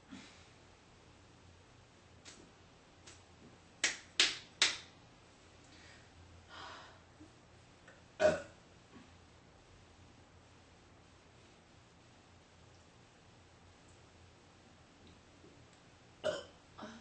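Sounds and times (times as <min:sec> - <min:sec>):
woman burping: 0:08.2 - 0:08.5, 0:16.2 - 0:17.0.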